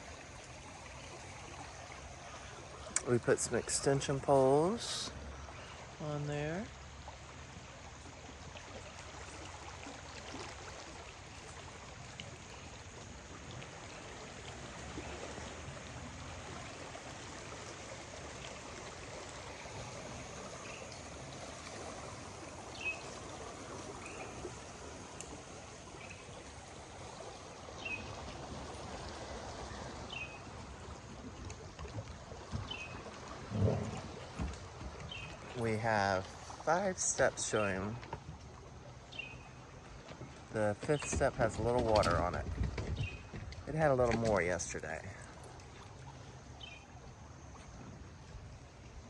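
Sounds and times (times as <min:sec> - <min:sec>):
flowing river water: 0:00.0 - 0:49.0.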